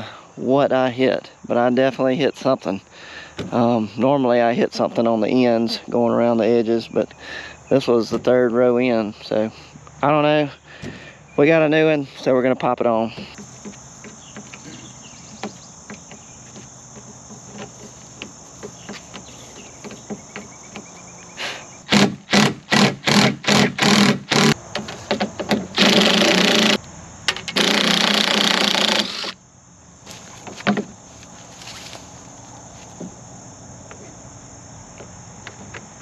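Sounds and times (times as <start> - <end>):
power tool bursts: 21.4 - 24.6, 25.7 - 26.8, 27.5 - 29.4.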